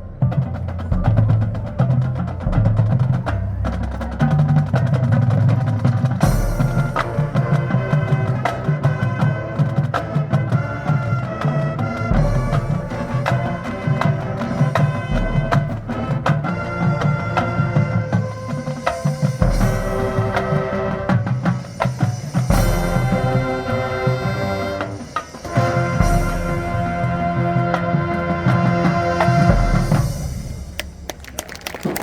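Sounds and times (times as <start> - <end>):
deep drum hits: 0.0 - 8.8
drumline and mallet percussion: 0.0 - 32.0
wind and brass lines: 0.0 - 32.0.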